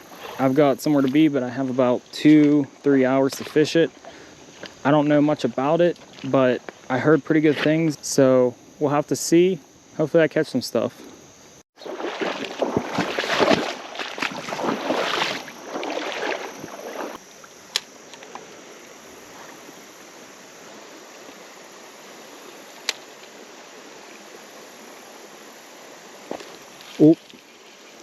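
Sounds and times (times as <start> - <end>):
creek water rushing: 11.8 - 17.2
stream flowing: 11.8 - 17.7.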